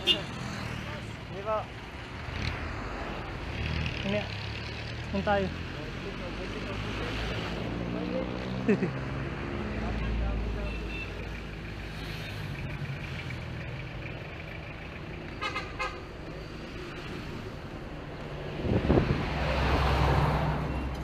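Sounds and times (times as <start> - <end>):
car horn beeps: 0.0 - 0.3, 10.6 - 11.3.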